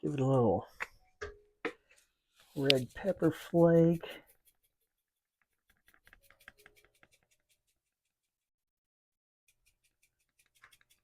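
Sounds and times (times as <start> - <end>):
pepper flakes shaken from shaker: 2.4 - 8.4, 9.5 - 11.0.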